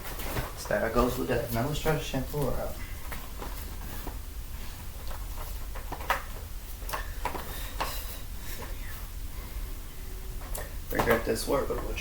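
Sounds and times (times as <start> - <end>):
steady low hum: 0.0 - 12.0
clicks and knocks of handling: 5.0 - 8.0.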